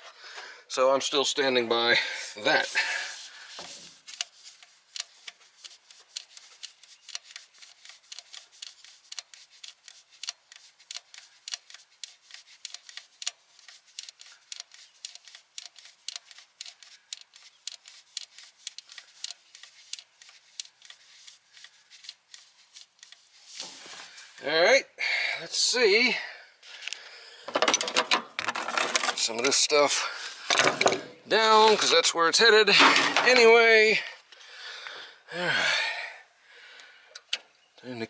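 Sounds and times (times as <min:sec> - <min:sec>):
small light clicks and ticks: 0:04.0 - 0:23.5.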